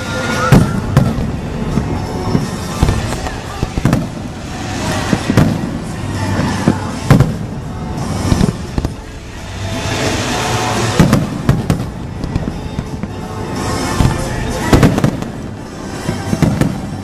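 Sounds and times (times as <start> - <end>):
fireworks banging: 0.0 - 17.0
fireworks crackling: 0.0 - 17.0
music playing: 0.0 - 17.0.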